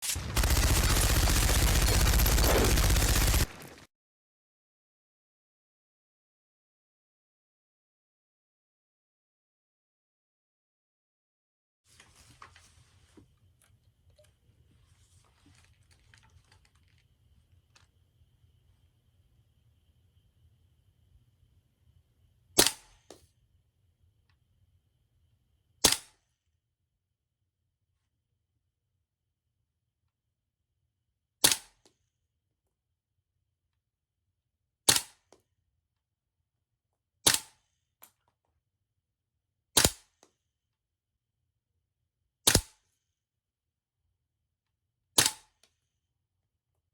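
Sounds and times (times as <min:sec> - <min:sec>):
airsoft rifle shots: 0:00.0 - 0:03.9, 0:42.5 - 0:42.7
steady low hum: 0:00.2 - 0:03.6.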